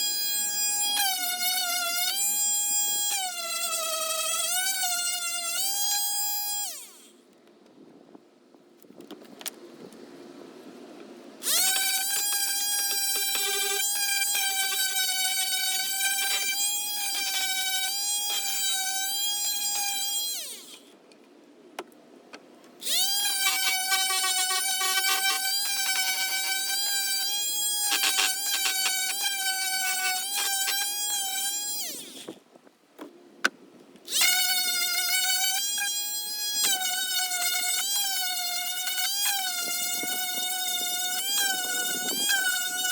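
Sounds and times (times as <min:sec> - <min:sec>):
electric power sander whining: 0:00.0 - 0:07.1, 0:11.4 - 0:20.9, 0:22.8 - 0:32.4, 0:34.1 - 0:42.9
sander clicking on wood: 0:22.4 - 0:42.9.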